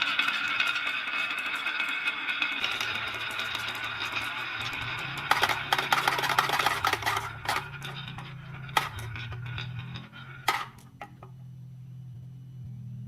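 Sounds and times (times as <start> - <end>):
marbles clicking down wooden track: 0.0 - 11.3
low rolling rumble: 2.6 - 13.0.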